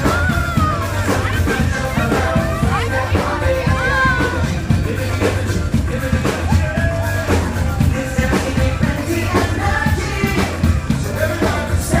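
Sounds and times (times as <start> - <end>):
parade music: 0.0 - 12.0
person singing: 0.0 - 12.0
steady drum beat: 0.0 - 12.0.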